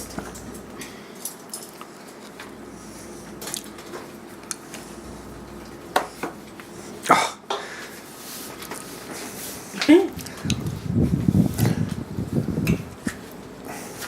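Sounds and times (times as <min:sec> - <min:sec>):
broom scraping floor: 0:02.3 - 0:07.0, 0:07.8 - 0:12.4.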